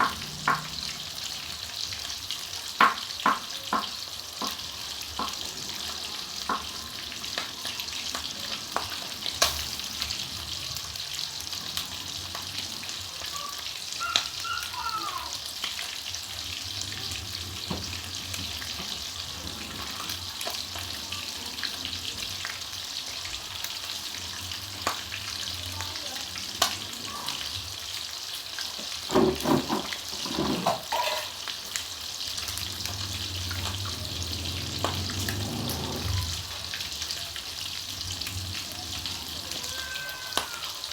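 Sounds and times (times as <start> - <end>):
chicken frying in hot oil: 0.0 - 40.9.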